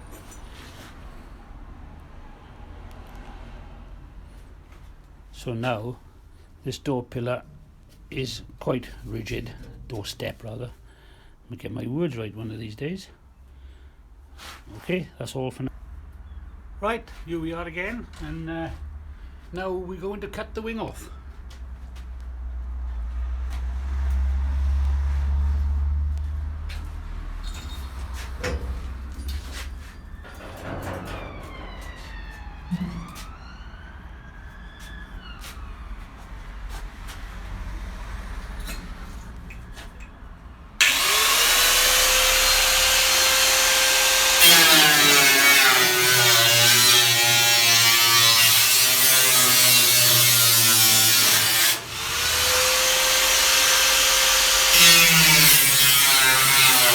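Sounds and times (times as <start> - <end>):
power cutting tool cutting steel: 40.8 - 56.9.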